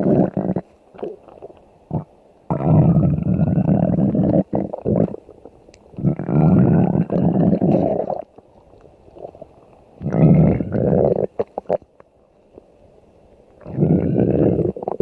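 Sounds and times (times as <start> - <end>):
cartoon stomach growls: 0.0 - 1.2, 1.9 - 5.2, 6.0 - 8.3, 10.0 - 11.8, 13.6 - 15.0
short gurgles: 6.0 - 8.3.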